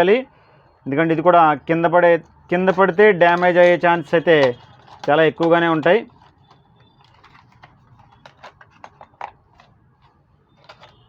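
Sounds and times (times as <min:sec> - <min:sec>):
packaging clicks and crackles: 0:02.5 - 0:11.0.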